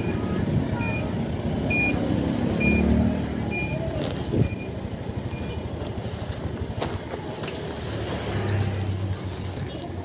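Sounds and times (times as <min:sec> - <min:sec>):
traffic noise: 0:00.0 - 0:10.0
vehicle engine running: 0:00.0 - 0:10.0
electronic beeper beeping: 0:01.7 - 0:02.0, 0:02.6 - 0:03.8.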